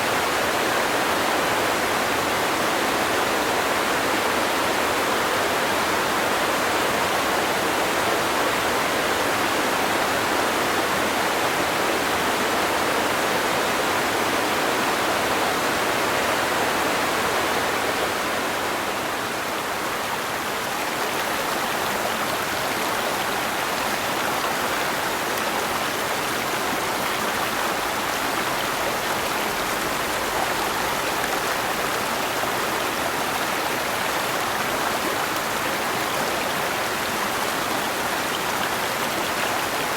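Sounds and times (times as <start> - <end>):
water rushing over rocks: 18.2 - 39.9.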